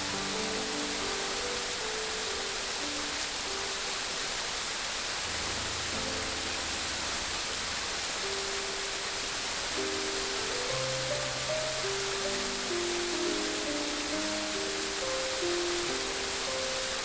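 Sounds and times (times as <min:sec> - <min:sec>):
running water rushing: 0:00.0 - 0:17.0
soft background music: 0:00.0 - 0:17.0.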